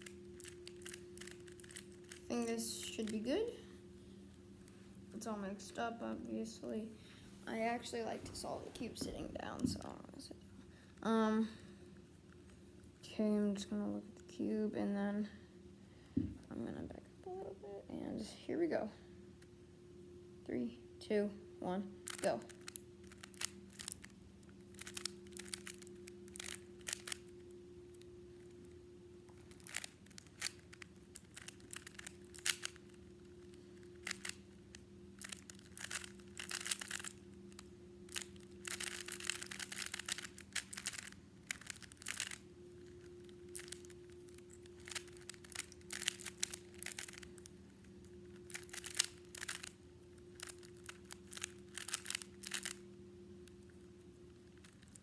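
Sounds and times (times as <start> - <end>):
puzzle cube clicking and rattling: 0.0 - 3.3, 22.0 - 24.1, 24.7 - 27.3, 29.5 - 47.5, 48.3 - 52.8, 54.5 - 55.0.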